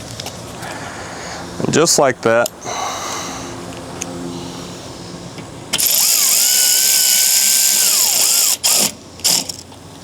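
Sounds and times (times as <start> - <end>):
cordless drill motor whine: 5.7 - 9.6.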